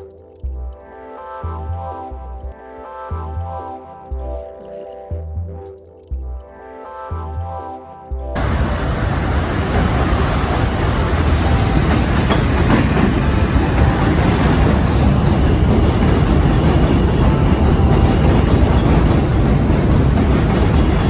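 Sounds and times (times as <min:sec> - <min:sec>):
subway train rumbling on bridge: 0:08.4 - 0:21.0.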